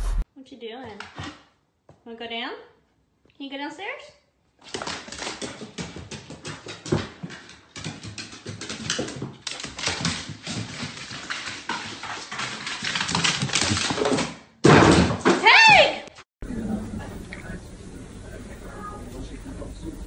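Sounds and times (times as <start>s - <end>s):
dog clicks and scuffs: 4.6s - 14.3s.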